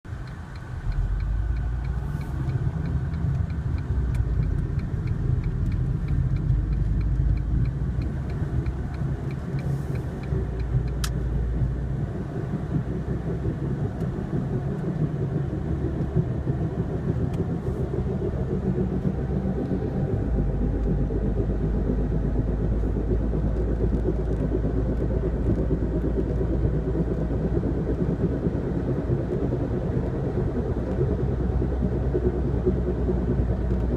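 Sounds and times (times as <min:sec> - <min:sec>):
low grinding wheel rumble: 0:00.1 - 0:33.9
rapid even ticking: 0:00.1 - 0:33.9.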